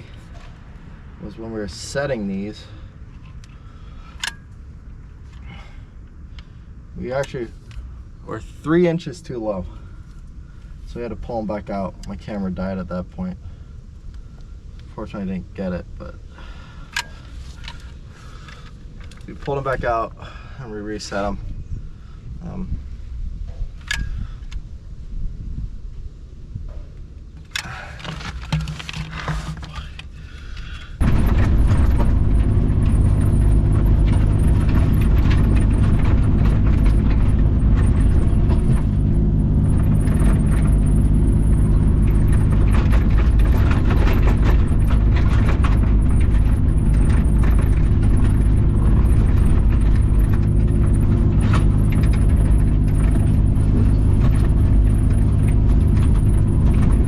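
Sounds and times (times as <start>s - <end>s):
diesel engine running: 27.5s - 57.0s.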